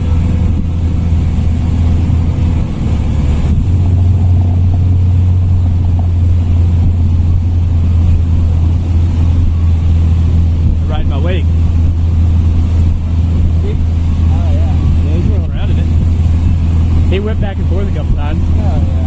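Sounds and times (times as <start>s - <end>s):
outboard motor running: 0.0s - 19.0s.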